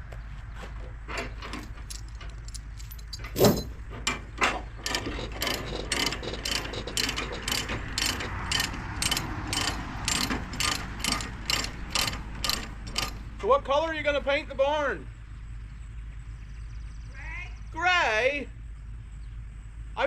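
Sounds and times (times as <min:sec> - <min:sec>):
ratchet clicking: 0:04.8 - 0:13.3.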